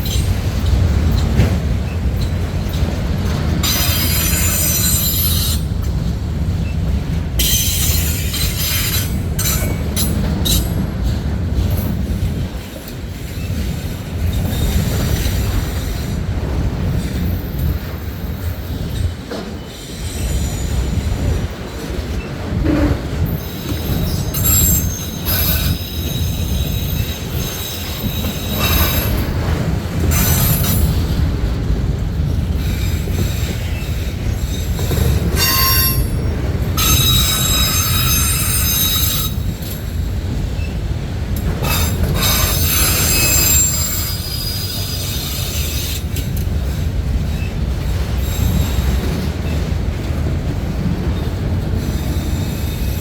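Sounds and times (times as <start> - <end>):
freight train rumbling: 0.0 - 53.0
steel wheel squeal: 3.6 - 5.7, 7.4 - 10.8, 19.7 - 21.1, 23.2 - 29.4, 30.1 - 31.1, 32.6 - 40.0, 41.6 - 46.4.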